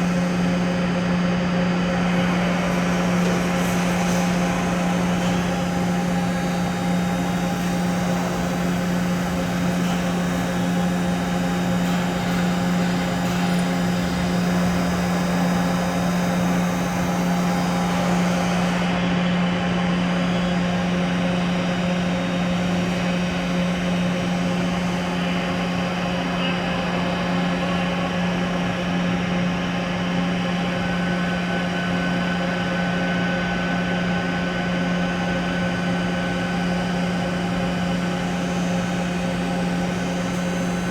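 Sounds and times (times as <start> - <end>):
boring mill machine hum: 0.0 - 40.9.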